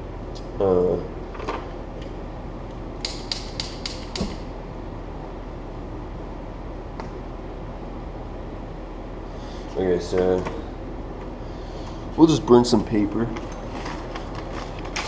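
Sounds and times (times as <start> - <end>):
ventilation fan humming: 0.0 - 15.0.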